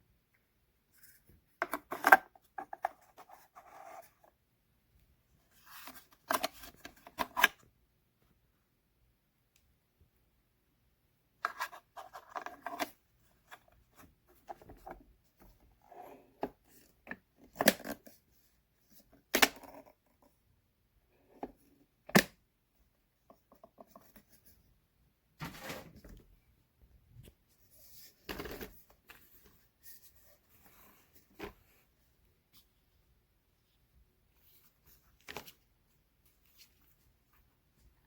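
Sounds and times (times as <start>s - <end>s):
rustling and scraping: 25.4s - 26.4s, 27.1s - 38.0s.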